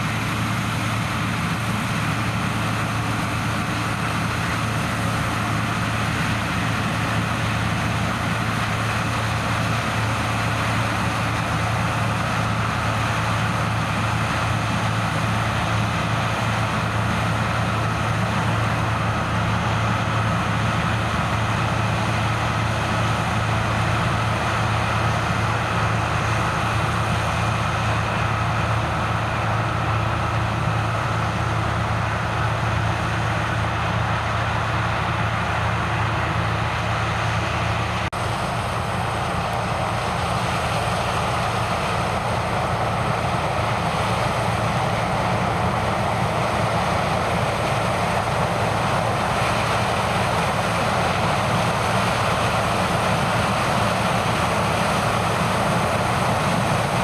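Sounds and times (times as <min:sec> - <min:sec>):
diesel machinery engine hum: 0:00.0 - 0:57.0
machinery noise: 0:00.0 - 0:57.0.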